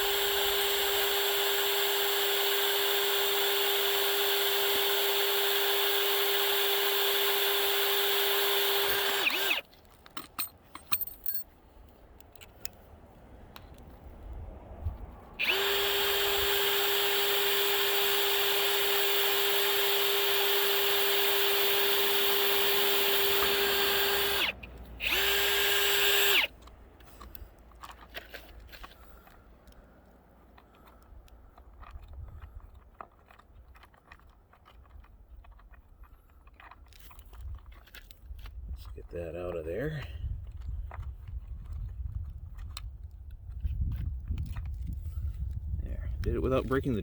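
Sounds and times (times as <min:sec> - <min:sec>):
electric drill whining: 0:00.0 - 0:09.7, 0:15.4 - 0:26.5.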